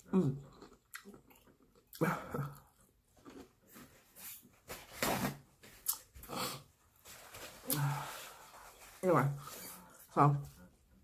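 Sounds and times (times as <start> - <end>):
chewing and lip smacks: 0.5 - 2.7.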